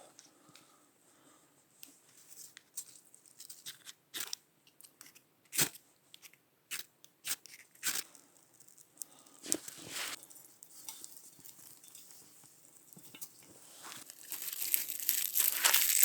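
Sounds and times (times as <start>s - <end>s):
dry sticks snapping and crackling: 14.0s - 16.0s.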